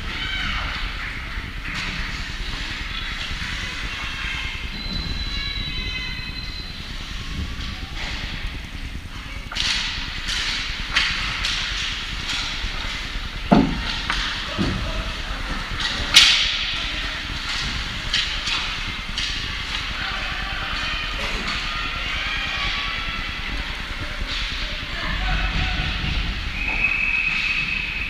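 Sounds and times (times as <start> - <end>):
arena background noise: 0.0 - 28.0.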